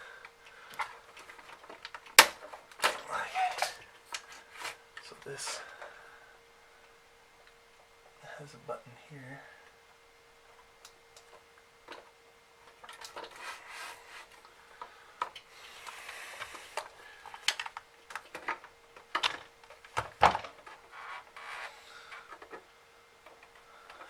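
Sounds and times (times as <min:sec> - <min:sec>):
plastic scraping rubs: 0:13.1 - 0:14.4, 0:20.2 - 0:22.6
plastic parts clicking: 0:15.2 - 0:22.6.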